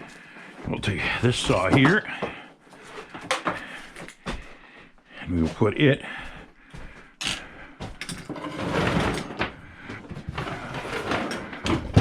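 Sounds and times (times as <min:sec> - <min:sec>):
saw scraping and sliding on shelf: 0:08.2 - 0:12.0.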